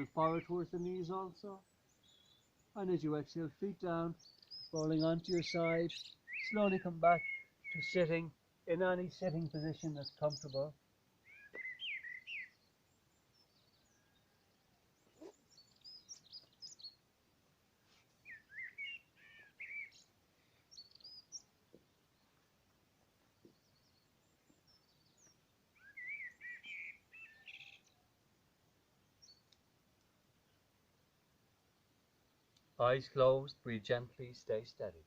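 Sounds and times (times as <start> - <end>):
birds chirping and warbling: 0.0 - 17.0, 18.2 - 28.1, 29.2 - 29.6.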